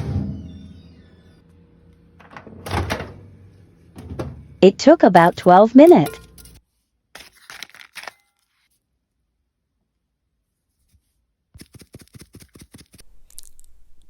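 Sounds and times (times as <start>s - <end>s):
potato chips crackling: 7.2s - 8.1s.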